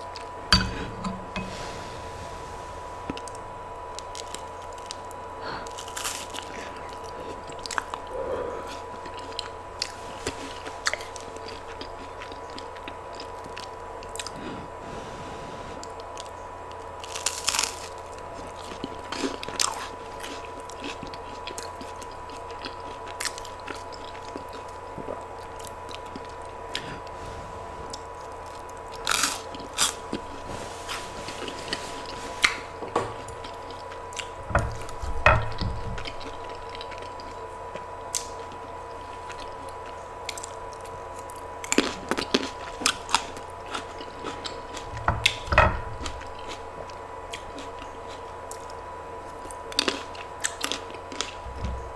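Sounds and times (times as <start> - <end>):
faint steady hum: 0.0 - 51.9
crisp crunches: 3.1 - 8.0, 17.0 - 23.6, 27.9 - 32.8
person biting and chewing: 27.9 - 35.0, 40.3 - 48.7, 49.4 - 51.9.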